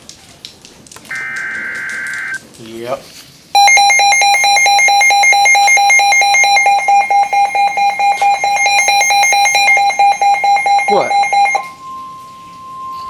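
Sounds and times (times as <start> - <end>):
weather radio alert beeping: 1.1 - 2.4, 3.6 - 13.0.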